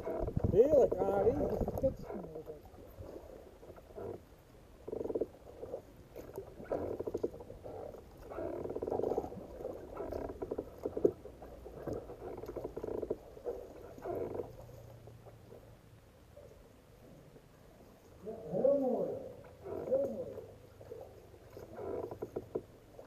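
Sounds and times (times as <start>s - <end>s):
water slapping against kayak hull: 0.0s - 15.7s.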